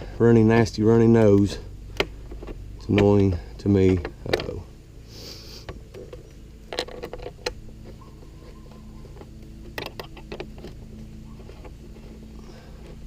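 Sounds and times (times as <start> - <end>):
low steady hum: 0.0 - 13.0
plastic parts clicking: 5.6 - 7.6.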